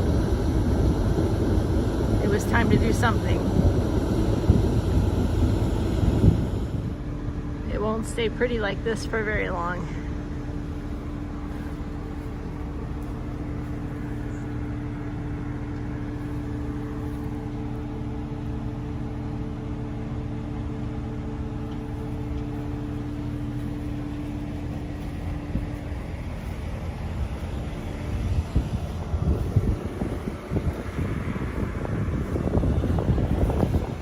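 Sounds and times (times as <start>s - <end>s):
wind on microphone: 0.0s - 8.0s, 24.0s - 34.0s
farm machine engine running: 0.0s - 34.0s.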